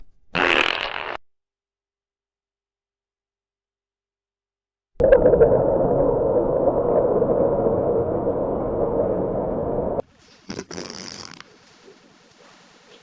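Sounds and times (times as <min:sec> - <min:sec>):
long fart sound effect: 0:00.3 - 0:01.2, 0:10.5 - 0:11.4.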